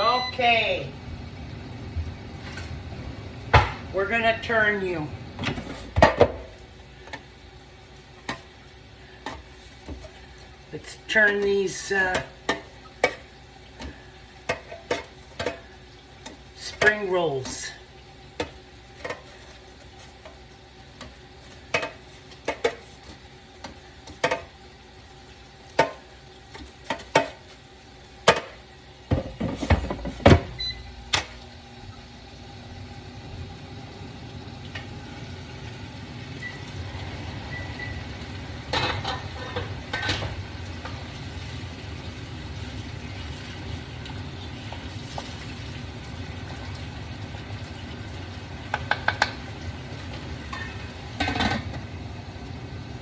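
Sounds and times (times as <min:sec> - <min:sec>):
air fryer fan humming: 0:00.0 - 0:53.0
basket knocking into air fryer: 0:03.5 - 0:03.8, 0:29.1 - 0:31.3.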